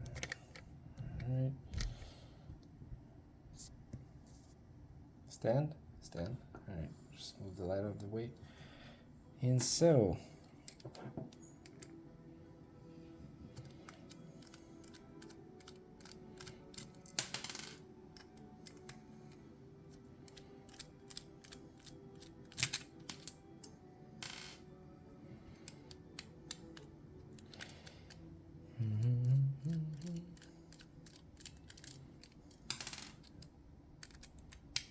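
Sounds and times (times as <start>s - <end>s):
faint steady hum: 0.0s - 34.9s
metallic clicks and taps: 29.9s - 34.9s.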